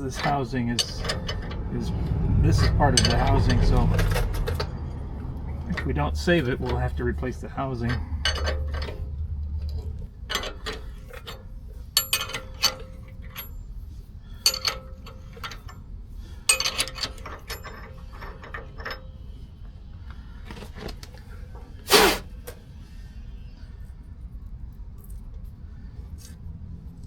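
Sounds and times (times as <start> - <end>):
ratchet-like metal clicking: 14.4 - 15.8.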